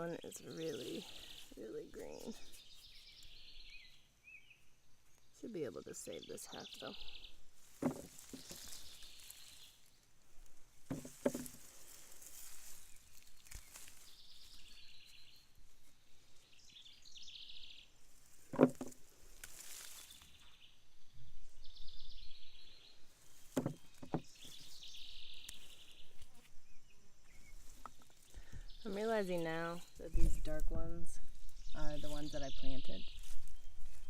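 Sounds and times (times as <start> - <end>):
digging in soil by hand: 0.0 - 3.5, 7.5 - 16.5, 18.1 - 20.5
high chirps of birds or insects: 0.0 - 19.0, 19.6 - 34.0
dull knocks: 7.8 - 8.6, 10.9 - 11.6, 18.5 - 19.0, 23.5 - 24.3.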